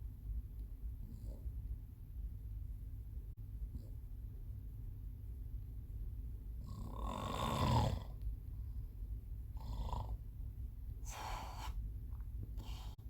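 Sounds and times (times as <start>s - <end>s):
man snoring: 6.7s - 8.1s.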